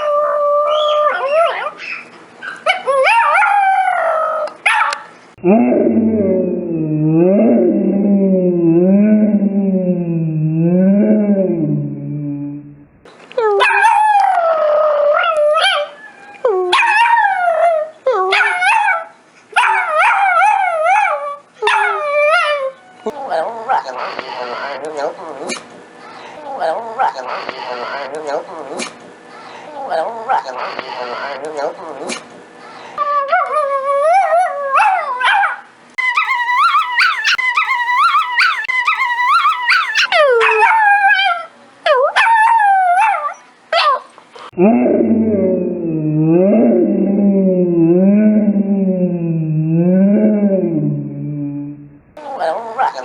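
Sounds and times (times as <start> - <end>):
dog howling: 0.0 - 1.8, 5.4 - 12.5, 13.5 - 23.8, 33.0 - 43.4, 44.5 - 51.6.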